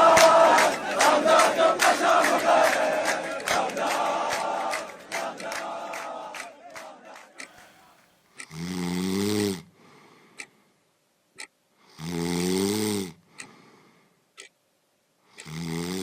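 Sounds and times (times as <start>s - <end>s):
man snoring loudly: 8.5s - 9.6s, 12.0s - 13.2s, 15.4s - 16.0s.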